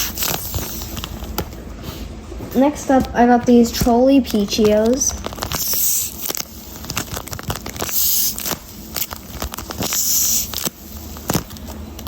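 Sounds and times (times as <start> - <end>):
paper squishy crinkling: 0.0 - 2.0, 3.4 - 12.0
small crackles: 3.7 - 12.0.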